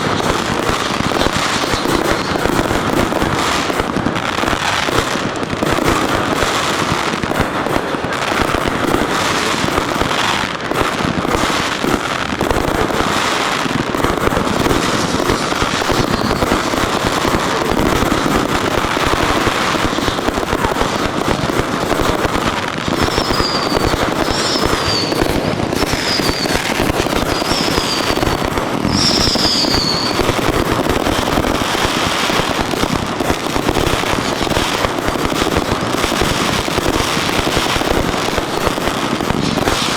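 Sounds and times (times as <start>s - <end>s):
fireworks bangs and crackling: 0.0s - 39.9s
falling whistles: 23.1s - 25.2s, 25.8s - 26.6s, 27.3s - 28.2s, 28.9s - 30.2s.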